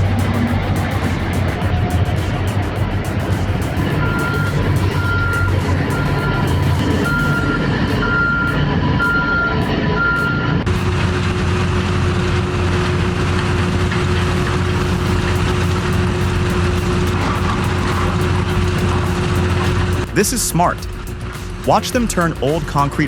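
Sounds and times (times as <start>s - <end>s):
backup alarm beeping: 0.0s - 10.9s
heavy machine engine humming: 0.0s - 22.6s
heavy machinery engine running: 0.0s - 22.8s.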